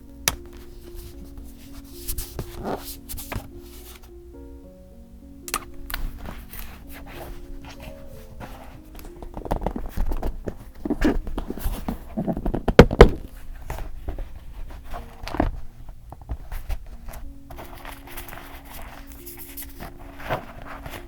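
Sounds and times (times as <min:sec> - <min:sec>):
paper rustling: 0:00.3 - 0:04.1, 0:05.6 - 0:21.0.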